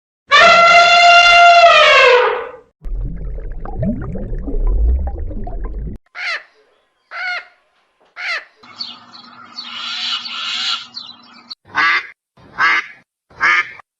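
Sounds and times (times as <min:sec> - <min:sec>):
many birds calling: 0:08.2 - 0:11.6
quack-like bird calls: 0:09.6 - 0:11.1, 0:11.7 - 0:13.8
short harsh bird calls: 0:09.6 - 0:11.2.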